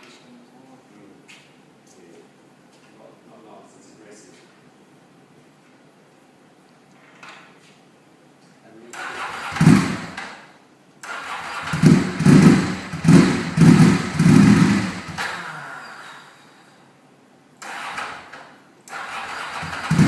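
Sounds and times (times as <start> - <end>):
motorcycle engine throttle blips: 11.4 - 15.4.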